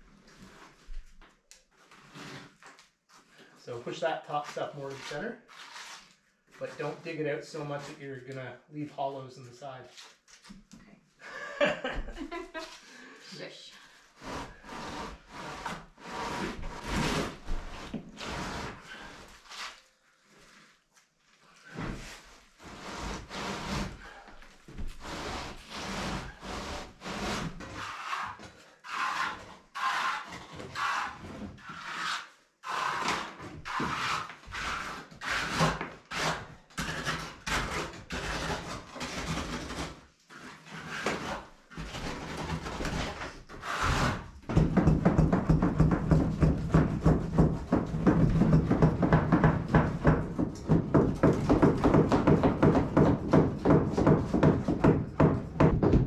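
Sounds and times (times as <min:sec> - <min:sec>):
trowel scraping wet concrete: 0:25.1 - 0:44.2.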